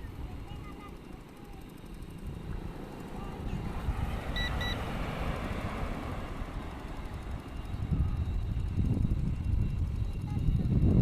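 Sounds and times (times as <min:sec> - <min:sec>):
wind buffeting microphone: 0:00.0 - 0:11.0
short electronic beeps: 0:04.3 - 0:04.8.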